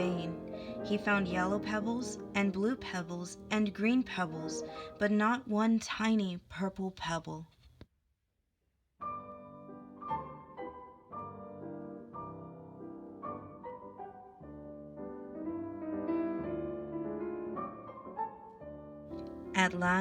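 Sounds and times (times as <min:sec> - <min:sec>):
piano melody: 0:00.0 - 0:05.0, 0:09.0 - 0:20.0.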